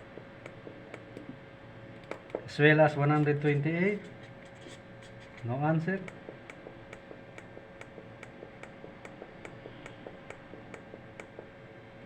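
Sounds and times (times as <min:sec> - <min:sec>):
faint steady hum: 0:00.0 - 0:12.0
steady ticking: 0:06.0 - 0:11.5.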